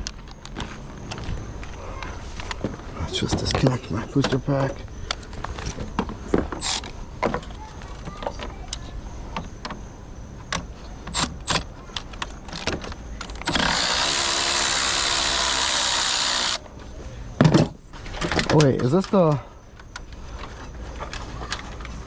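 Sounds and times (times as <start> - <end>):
tools and metal parts clanking: 10.4 - 14.4, 17.4 - 22.0
handheld power tool running: 13.4 - 16.6.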